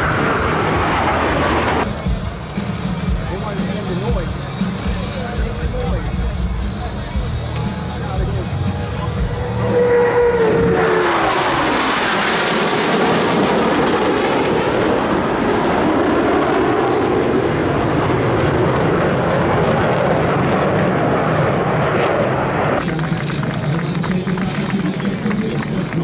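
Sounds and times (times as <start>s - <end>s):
jet whine dropping in pitch: 0.0s - 2.0s, 9.1s - 19.0s
fighter jets flying past: 0.0s - 7.4s, 8.3s - 26.0s.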